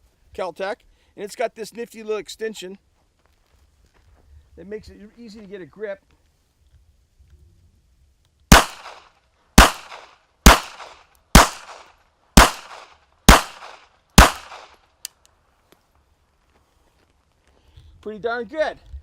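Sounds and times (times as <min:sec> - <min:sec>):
pistol shots: 0:08.5 - 0:14.8.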